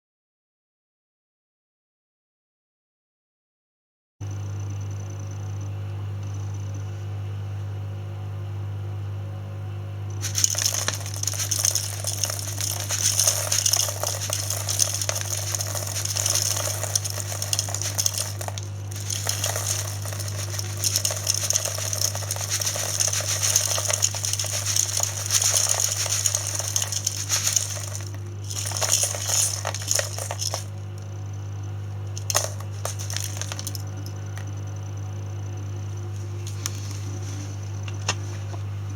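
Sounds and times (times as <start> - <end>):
cat litter rattling in a scoop: 10.2 - 30.8, 32.1 - 34.2, 36.2 - 38.2.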